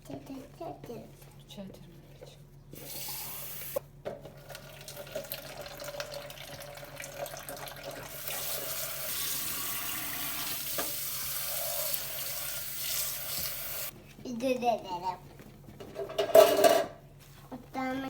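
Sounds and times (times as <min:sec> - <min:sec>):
tap running into sink: 0:08.0 - 0:12.1, 0:12.8 - 0:13.9.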